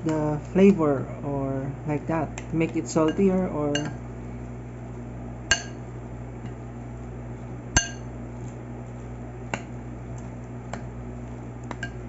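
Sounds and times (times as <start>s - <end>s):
steady low hum: 0.0s - 12.0s
utensil clinking mixing bowl: 2.7s - 4.0s.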